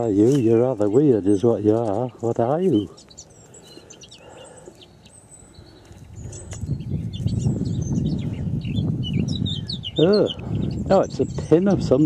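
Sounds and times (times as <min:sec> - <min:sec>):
rough rustling and scuffing: 0:00.0 - 0:03.2
small birds chirping: 0:00.0 - 0:12.0.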